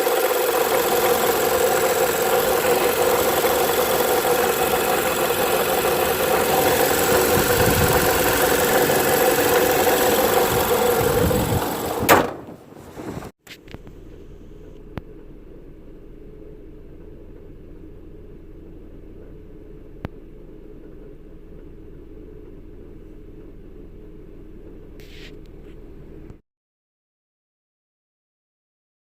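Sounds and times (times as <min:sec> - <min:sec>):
minivan engine running: 0:00.0 - 0:12.5
low vehicle rumble: 0:00.0 - 0:17.3
sharp bang: 0:11.8 - 0:12.7.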